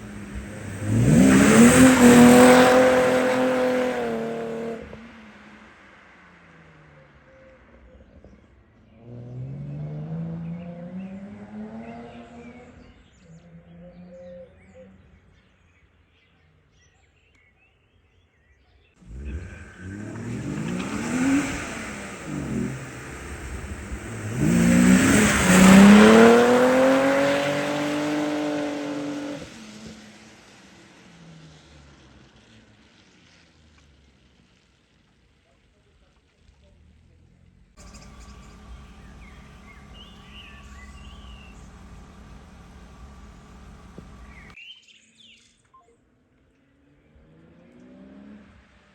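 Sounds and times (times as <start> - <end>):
car engine revving hard: 0.0 - 5.3, 19.0 - 30.0, 37.8 - 44.6
tyres hissing on road: 0.0 - 7.2, 19.0 - 37.1, 37.8 - 44.6.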